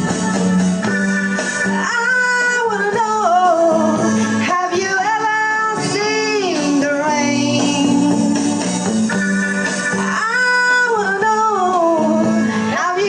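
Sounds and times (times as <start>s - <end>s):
guitar and bass chords: 0.0s - 13.0s
woman singing: 1.7s - 8.7s, 10.0s - 13.0s.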